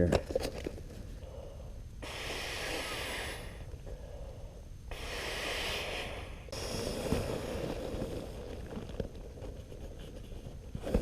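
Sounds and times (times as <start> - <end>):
man blowing into air mattress: 2.0 - 3.7, 4.9 - 8.1.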